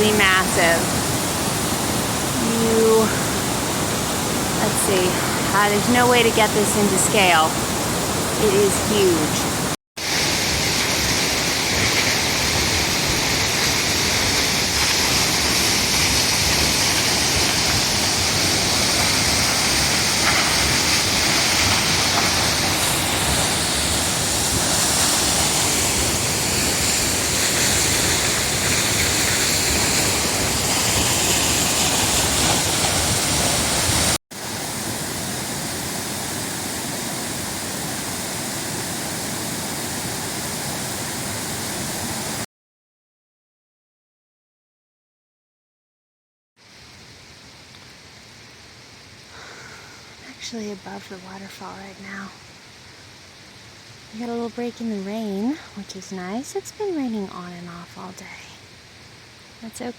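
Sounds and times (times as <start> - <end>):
waterfall rushing: 0.0 - 42.4.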